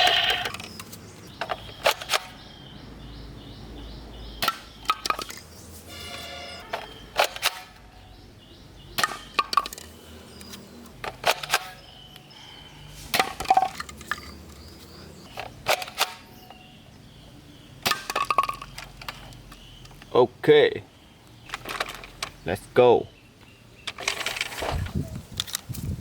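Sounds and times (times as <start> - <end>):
plastic toy guns clicking: 0.0 - 0.7, 6.8 - 7.8.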